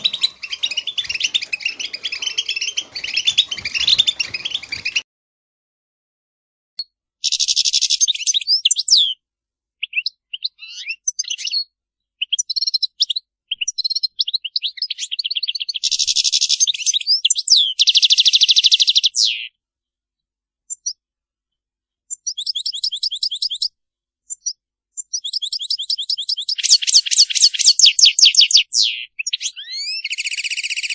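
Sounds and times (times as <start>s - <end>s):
goldfinches twittering: 0.0s - 5.0s.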